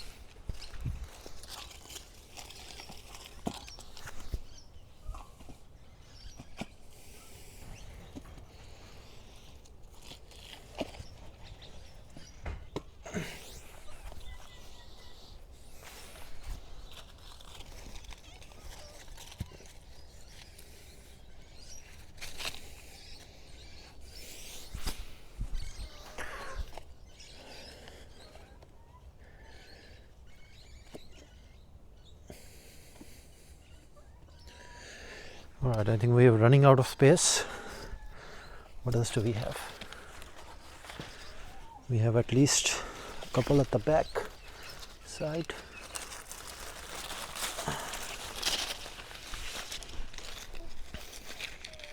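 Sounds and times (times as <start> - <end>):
faint bird chirps: 0.0 - 51.9
leaves and netting rustling: 0.0 - 51.9
light rustling: 37.4 - 51.9.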